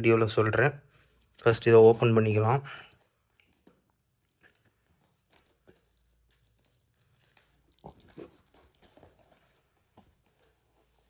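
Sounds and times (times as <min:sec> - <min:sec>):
packaging handling clicks and scrapes: 0:04.4 - 0:11.0.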